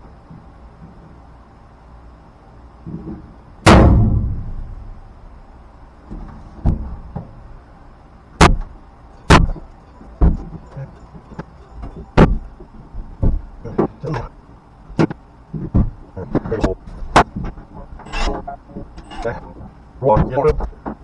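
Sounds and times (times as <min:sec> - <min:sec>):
hand tools knocking in truck bed: 0:08.4 - 0:13.5.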